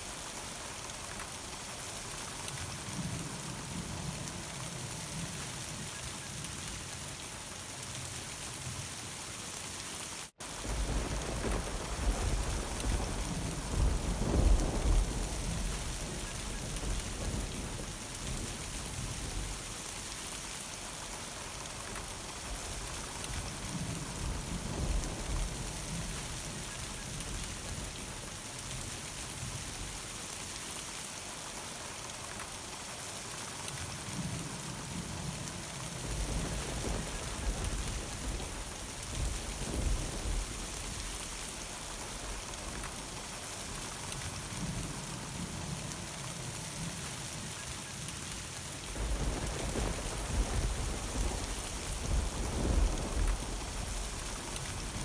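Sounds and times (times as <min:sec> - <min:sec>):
steady rain: 0:00.0 - 0:55.0
rolling thunder rumble: 0:10.4 - 0:19.8, 0:21.4 - 0:28.3, 0:34.9 - 0:45.8, 0:48.8 - 0:55.0.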